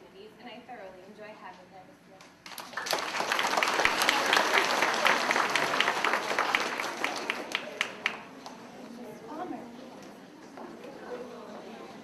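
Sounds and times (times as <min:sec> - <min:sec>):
audience applauding: 0:02.5 - 0:08.4.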